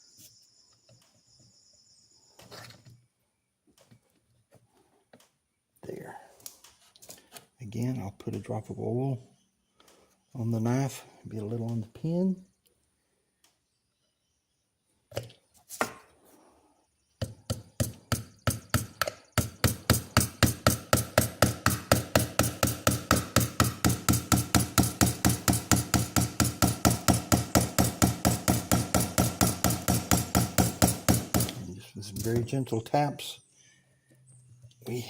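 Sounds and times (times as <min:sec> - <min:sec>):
hammer tapping metal pin: 0:17.5 - 0:31.6.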